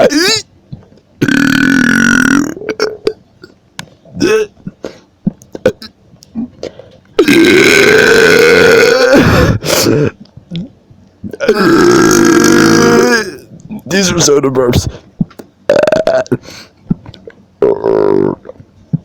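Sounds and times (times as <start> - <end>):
loud deep burps: 1.2 - 3.6, 4.2 - 4.7, 7.2 - 10.7, 11.3 - 13.5, 15.7 - 16.4, 17.6 - 18.6
small gulps and clicks: 2.6 - 7.2, 10.1 - 11.5, 14.9 - 17.5, 18.1 - 19.0
man talking: 13.8 - 15.0.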